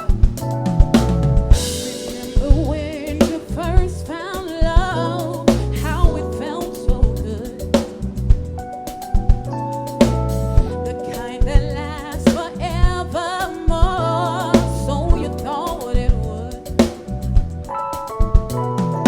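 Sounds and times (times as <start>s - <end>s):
soul band playing: 0.0s - 19.0s
cymbal crash: 1.5s - 2.6s
person singing with vibrato: 1.7s - 8.0s, 10.6s - 16.9s.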